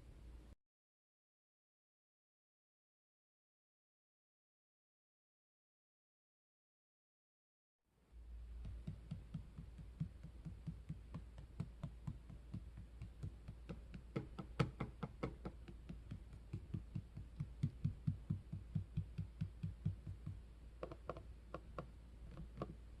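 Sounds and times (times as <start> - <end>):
tapping on laptop touchpad: 8.6 - 22.8.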